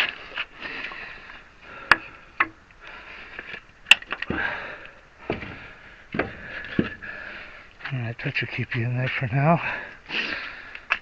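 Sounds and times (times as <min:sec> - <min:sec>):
man breathing hard and sniffing: 0:09.6 - 0:10.9.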